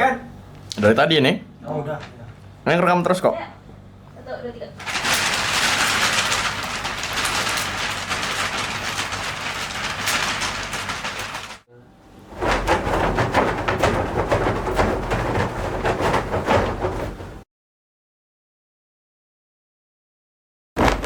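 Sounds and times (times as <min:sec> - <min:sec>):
rattling and crackling noise: 0:04.8 - 0:11.7, 0:12.3 - 0:17.4.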